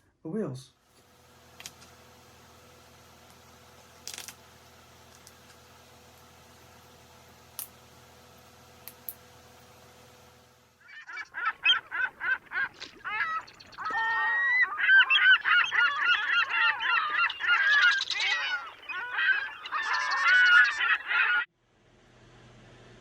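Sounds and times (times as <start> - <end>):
geese honking: 10.8 - 21.5.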